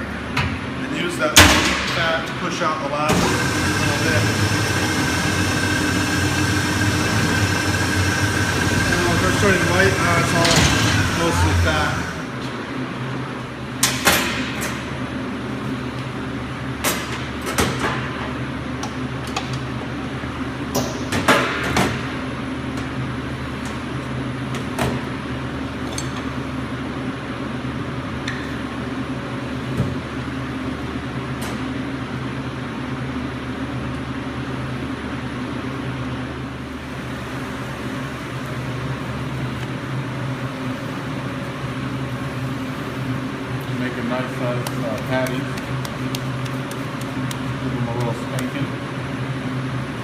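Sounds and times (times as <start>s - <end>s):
electric meat grinder motor hum: 3.2s - 10.2s.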